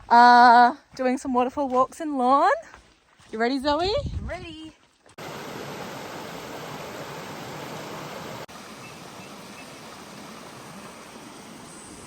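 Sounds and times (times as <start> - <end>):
water rushing: 5.1 - 12.0.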